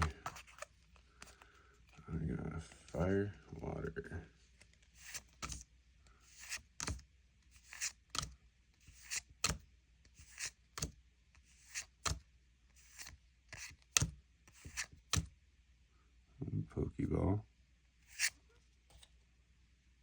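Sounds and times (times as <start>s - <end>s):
trading cards swishing and snapping: 4.6s - 5.6s, 6.3s - 7.0s, 7.6s - 12.2s, 12.8s - 15.3s, 18.1s - 18.4s.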